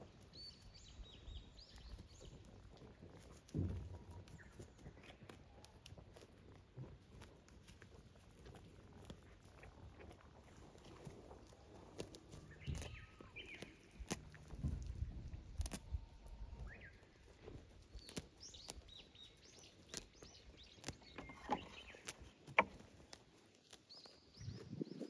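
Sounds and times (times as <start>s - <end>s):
small birds chirping: 0.0s - 25.0s
sharp knocks and clicks: 20.8s - 22.9s.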